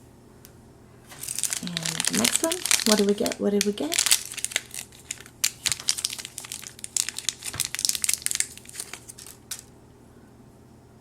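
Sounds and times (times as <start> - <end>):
plastic packet crinkling: 1.1 - 9.7.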